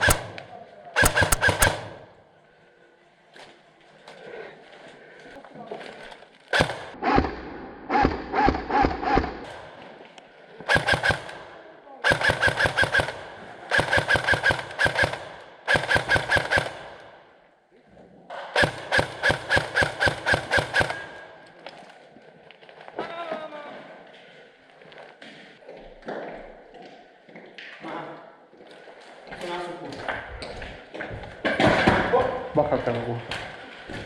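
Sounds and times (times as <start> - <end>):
airsoft rifle full-auto bursts: 0.0 - 2.2, 10.7 - 17.1, 18.6 - 21.4.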